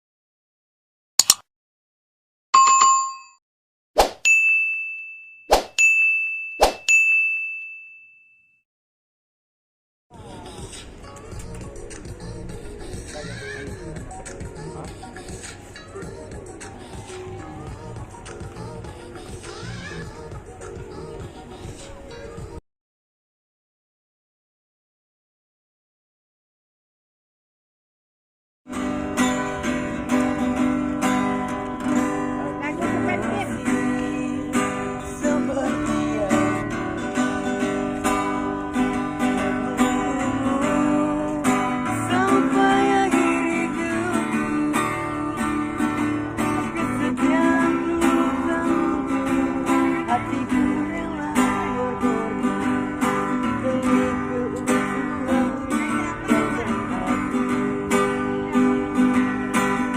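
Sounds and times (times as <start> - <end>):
acoustic guitar strumming: 28.7 - 59.9.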